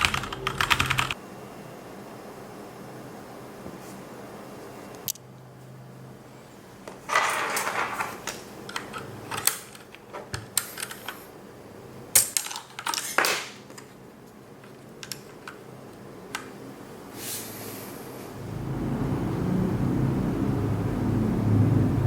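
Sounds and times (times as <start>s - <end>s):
mechanical keyboard typing: 0.0s - 1.2s.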